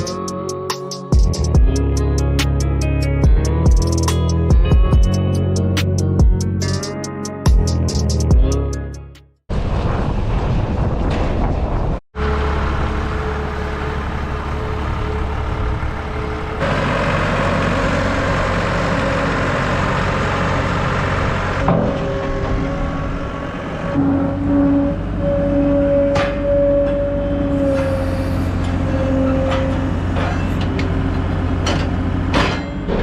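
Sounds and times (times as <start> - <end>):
vehicle engine running: 12.2 - 22.4.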